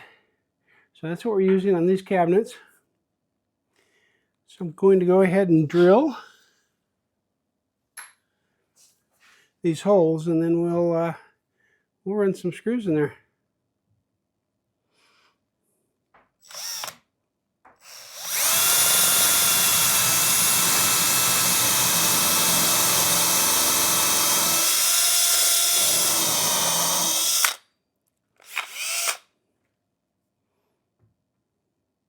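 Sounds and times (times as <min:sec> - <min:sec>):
power drill boring into board: 0:16.4 - 0:17.0, 0:17.8 - 0:27.6, 0:28.4 - 0:29.2
drill trigger blips: 0:16.5 - 0:17.0, 0:17.8 - 0:27.6, 0:28.4 - 0:29.2.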